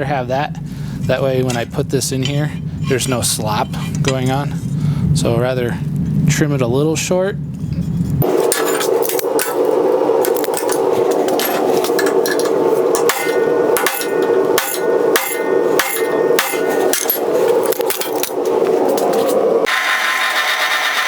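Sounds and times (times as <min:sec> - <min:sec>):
steady rushing noise: 0:00.0 - 0:19.7
hammer striking steel on anvil: 0:08.4 - 0:18.4.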